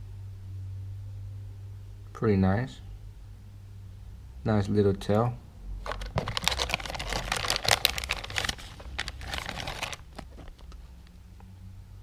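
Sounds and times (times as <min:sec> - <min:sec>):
plastic packaging crinkling: 0:05.8 - 0:10.9.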